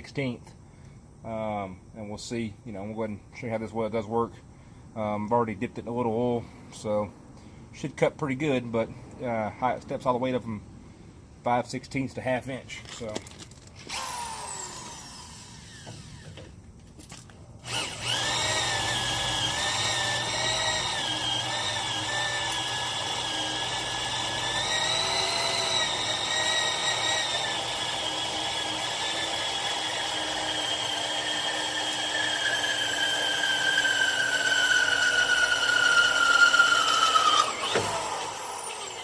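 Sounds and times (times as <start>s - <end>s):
power drill cutting steel: 13.8s - 16.4s, 17.6s - 39.0s.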